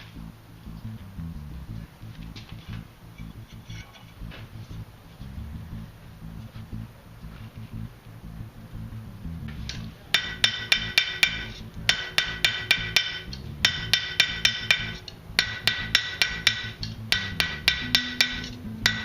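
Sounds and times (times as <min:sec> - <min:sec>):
hammer ringing on anvil: 0:10.2 - 0:19.0.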